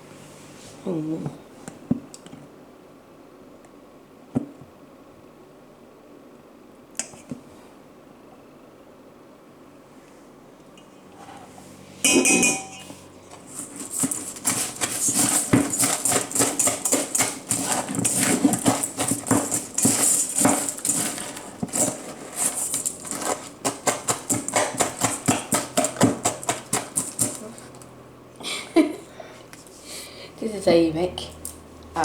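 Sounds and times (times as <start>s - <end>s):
ringing clink: 12.1s - 12.9s
cornflakes crunching and rustling: 13.4s - 27.8s.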